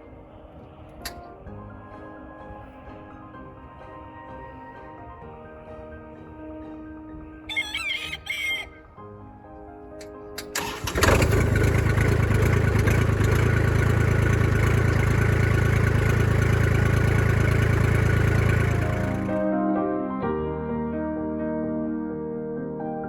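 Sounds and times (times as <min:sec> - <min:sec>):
rooster crowing: 0:07.5 - 0:08.8
tractor engine starting and running: 0:10.4 - 0:19.4.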